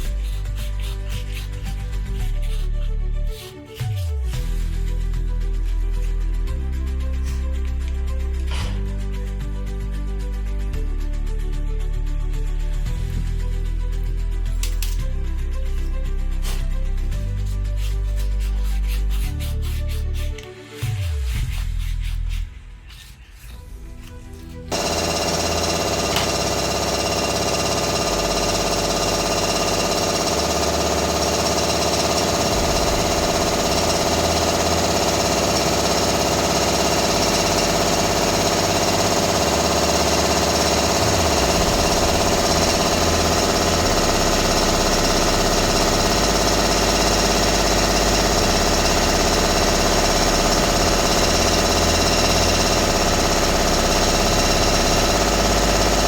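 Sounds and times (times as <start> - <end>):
hammer drill chattering: 24.7 - 56.0.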